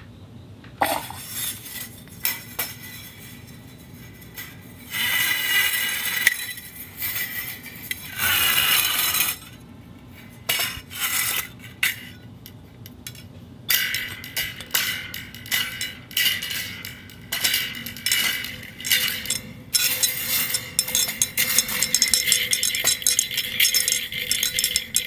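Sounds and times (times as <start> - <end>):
metallic ringing rattle: 0.8 - 25.0
dog bowl clinking: 13.7 - 25.0.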